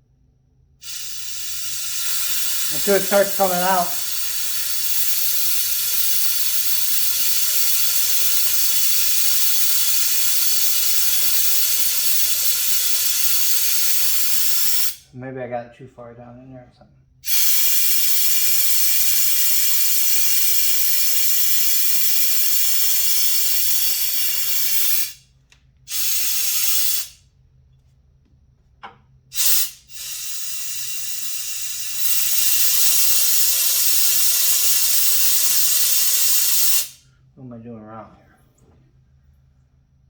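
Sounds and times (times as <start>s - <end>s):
compressed air hissing: 0.8s - 15.1s, 17.2s - 25.2s, 25.9s - 27.2s, 29.3s - 37.2s.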